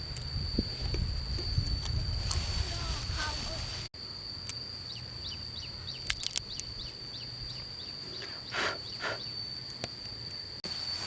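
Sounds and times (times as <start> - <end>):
bird chirping: 4.8 - 9.5.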